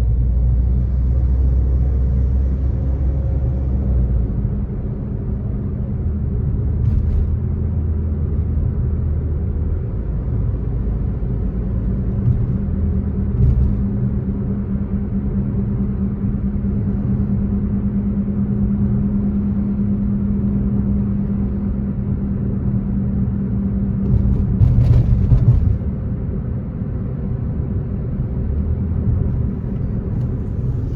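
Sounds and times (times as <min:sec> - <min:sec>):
car engine and road rumble: 0:00.0 - 0:30.9
steady low drone: 0:00.0 - 0:30.9.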